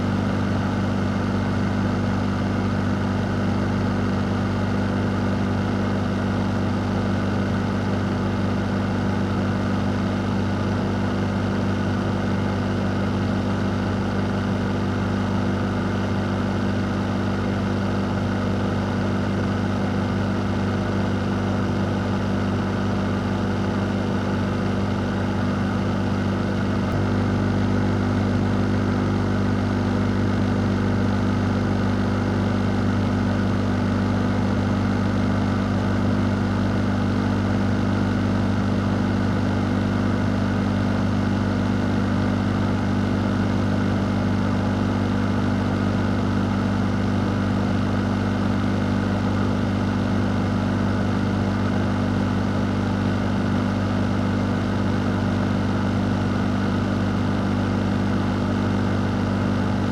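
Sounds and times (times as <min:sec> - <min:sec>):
low motor hum: 0:08.6 - 0:37.0.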